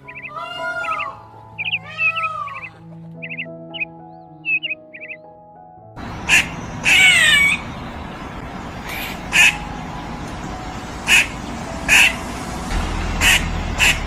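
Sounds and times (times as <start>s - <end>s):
duck quacking: 6.3s - 7.6s, 8.9s - 9.6s, 11.1s - 11.3s, 11.9s - 12.2s, 13.2s - 14.0s.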